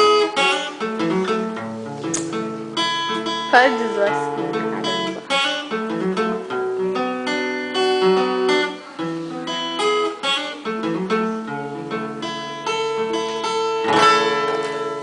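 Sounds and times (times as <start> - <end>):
acoustic guitar picking melody: 0.0 - 15.0.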